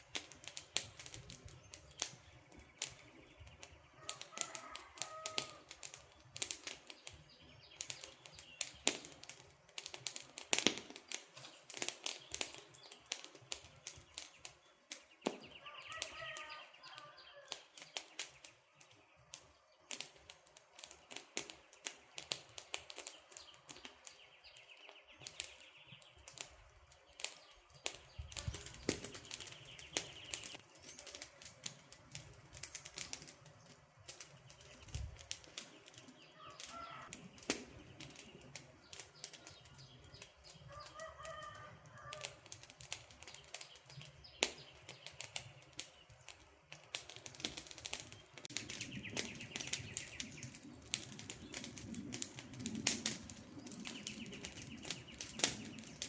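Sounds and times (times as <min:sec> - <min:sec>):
campfire crackling and popping: 0:00.0 - 0:56.0
bird chirping: 0:27.1 - 0:31.3, 0:48.0 - 0:50.8.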